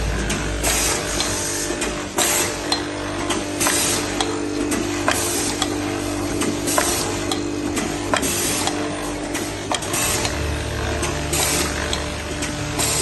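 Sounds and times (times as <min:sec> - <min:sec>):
steady machine hum: 0:00.0 - 0:13.0.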